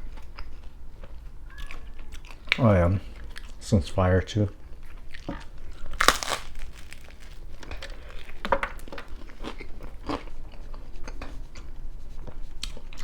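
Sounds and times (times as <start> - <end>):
crunchy pizza chewing: 0.0 - 3.6, 4.5 - 13.0.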